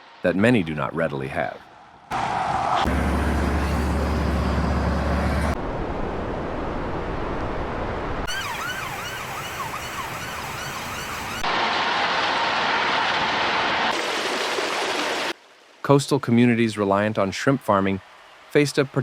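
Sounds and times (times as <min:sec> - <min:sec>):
emergency vehicle siren yelping: 0:08.3 - 0:11.5.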